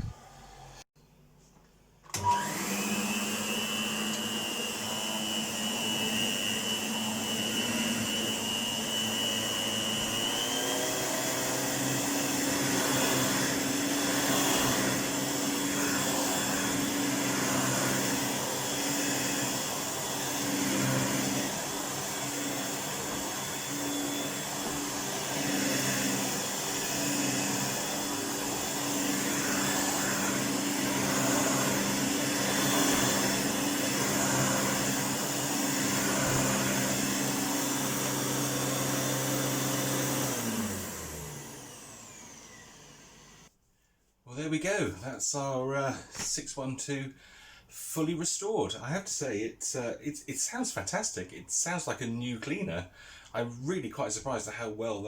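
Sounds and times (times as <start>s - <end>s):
vacuum cleaner motor whining: 0.0s - 0.8s, 2.1s - 43.5s.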